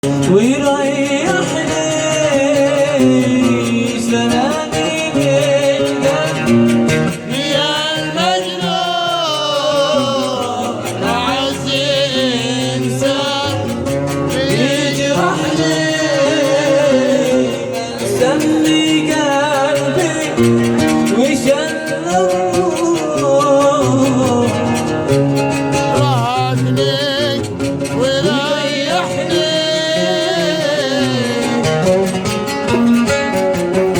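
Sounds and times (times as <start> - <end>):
man singing: 0.0 - 33.9
plucked string instrument: 0.0 - 33.9.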